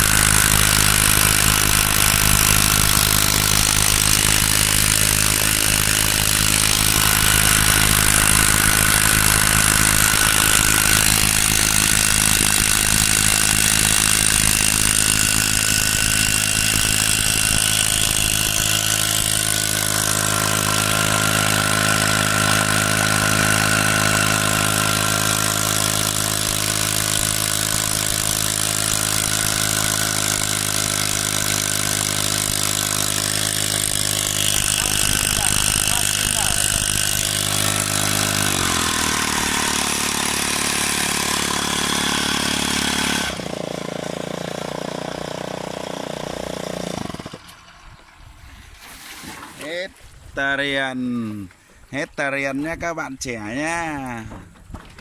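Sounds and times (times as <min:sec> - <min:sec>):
small boat motor running: 0:00.0 - 0:48.2.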